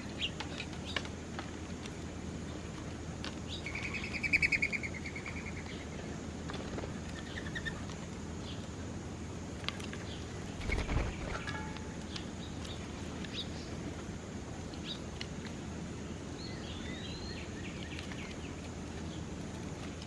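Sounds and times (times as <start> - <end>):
songbirds chirping: 0.0 - 19.6
bird rapid trill: 10.4 - 12.1.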